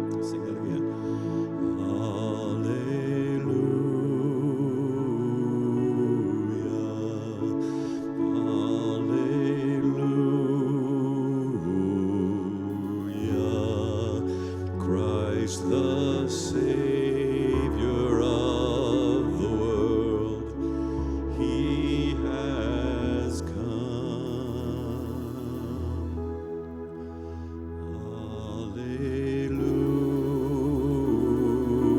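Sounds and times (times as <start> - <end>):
slow soft worship music: 0.0 - 31.9
deep bass note: 12.6 - 31.9.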